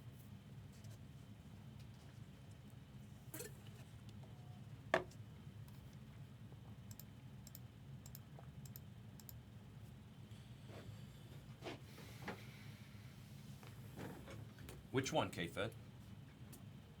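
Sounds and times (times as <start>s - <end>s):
faint high ticks: 6.9s - 9.4s.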